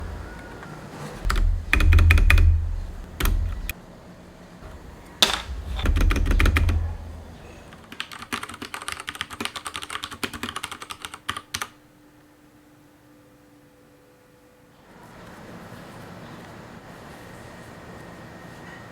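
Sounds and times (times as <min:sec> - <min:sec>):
mechanical keyboard typing: 0:01.2 - 0:03.8, 0:04.7 - 0:11.8.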